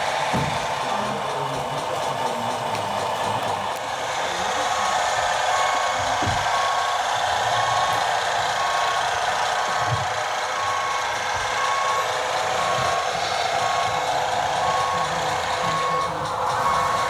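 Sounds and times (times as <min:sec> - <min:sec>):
steady background noise: 0:00.0 - 0:17.0
reversing beeper short beeps: 0:09.6 - 0:17.0.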